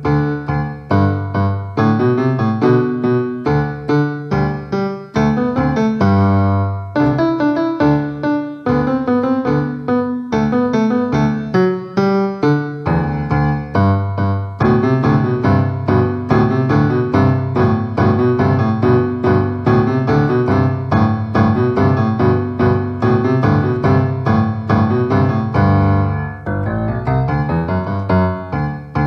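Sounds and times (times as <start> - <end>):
piano music: 0.0 - 29.0
low bass part: 21.3 - 29.0.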